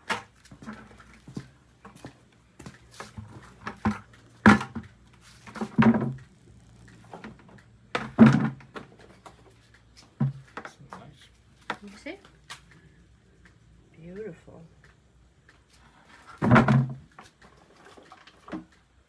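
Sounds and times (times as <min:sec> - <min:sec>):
objects knocking and thudding: 0:00.0 - 0:06.3, 0:07.0 - 0:11.9, 0:16.2 - 0:18.7.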